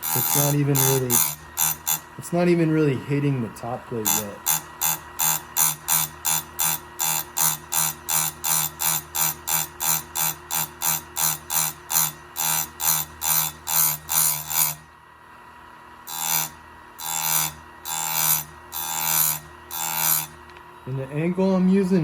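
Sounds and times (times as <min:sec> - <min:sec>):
chain grinder grinding: 0:00.0 - 0:02.1, 0:04.0 - 0:14.6.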